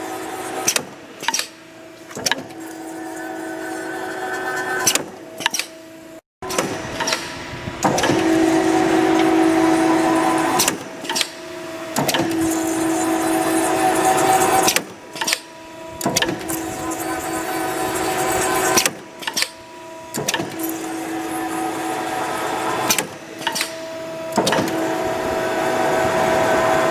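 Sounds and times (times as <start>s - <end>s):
machine whine and hiss: 0.0s - 26.9s
sharp machine clacks: 6.4s - 25.0s.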